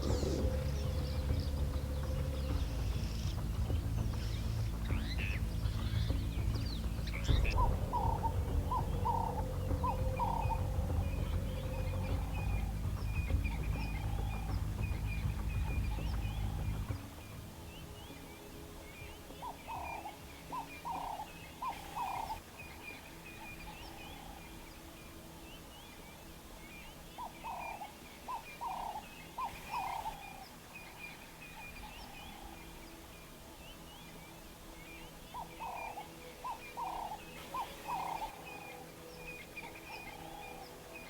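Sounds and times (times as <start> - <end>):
bird clucking calls: 0.0 - 17.0, 35.3 - 40.7
small birds chirping: 0.0 - 41.0.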